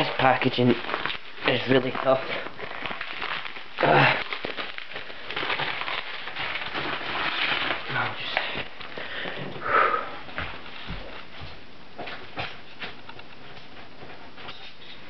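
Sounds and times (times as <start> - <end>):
plastic packaging ripping: 0.0 - 9.0
plastic packaging crackling: 0.0 - 9.4.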